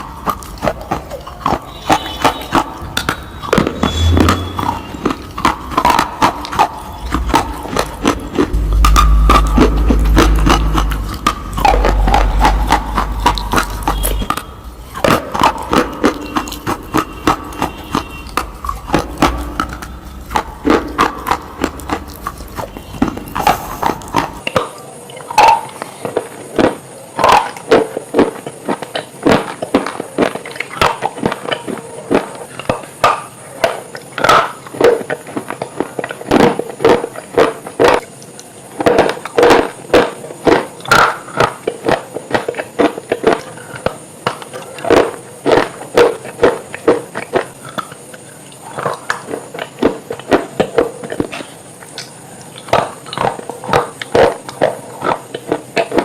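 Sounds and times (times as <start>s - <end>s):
sharp crunches: 0.0s - 24.7s
low steady drone: 2.5s - 24.5s.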